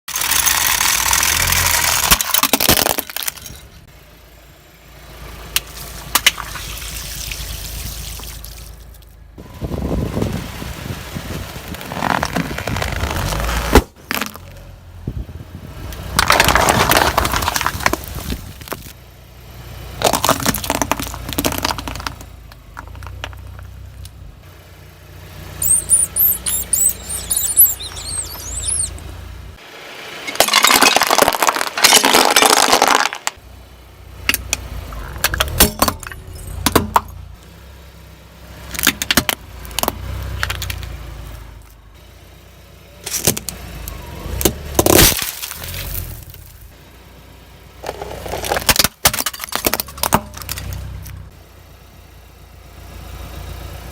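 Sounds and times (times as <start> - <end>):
car engine running low: 0.2 - 53.9
tyres crushing crunchy objects: 11.2 - 14.7, 16.0 - 19.0, 20.0 - 23.7, 25.6 - 29.0, 30.3 - 33.4, 44.4 - 46.6, 47.8 - 51.2
high squeaking: 25.6 - 29.2
sharp crack: 43.0 - 46.6.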